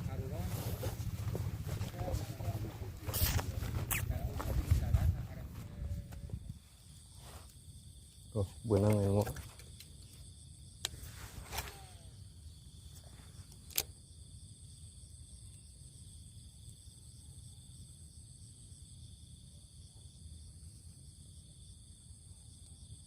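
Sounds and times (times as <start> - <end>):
chorus of crickets and insects: 0.0 - 23.0
sharp clicks: 13.6 - 13.9.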